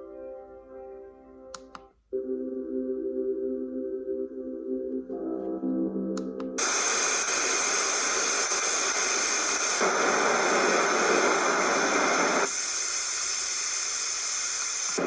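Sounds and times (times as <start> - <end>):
white noise machine static: 6.6 - 15.0.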